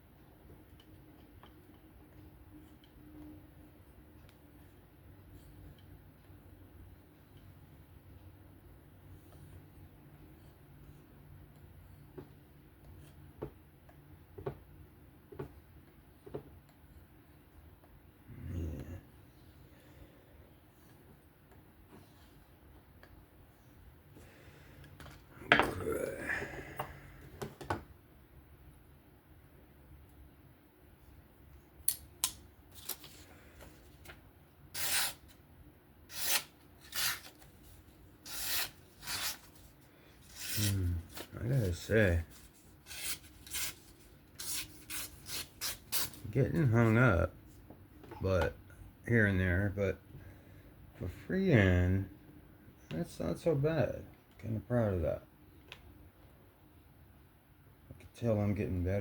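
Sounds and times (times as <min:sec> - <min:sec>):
knife slicing paper: 0:34.7 - 0:35.3, 0:36.1 - 0:37.4, 0:38.2 - 0:39.6, 0:40.2 - 0:41.9, 0:42.8 - 0:46.2.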